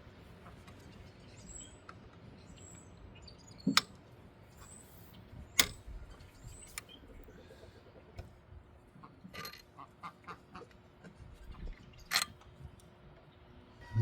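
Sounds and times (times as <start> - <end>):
faint high chirps: 13.8 - 14.0.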